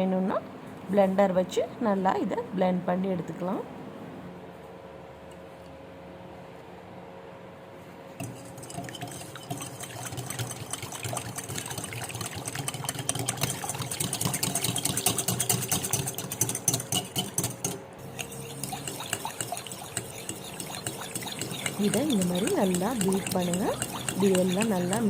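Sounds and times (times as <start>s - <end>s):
utensil whisking in a bowl: 8.2s - 25.0s.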